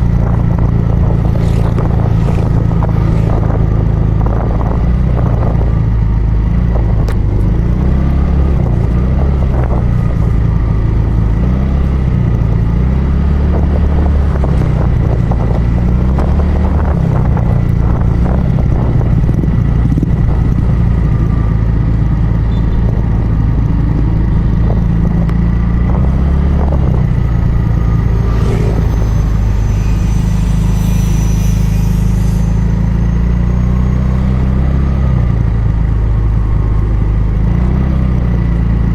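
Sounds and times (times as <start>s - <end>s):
motorcycle engine and road noise: 0.0s - 38.9s
wind rumble on microphone: 0.0s - 38.9s
brief high-pitched sound: 27.2s - 32.9s.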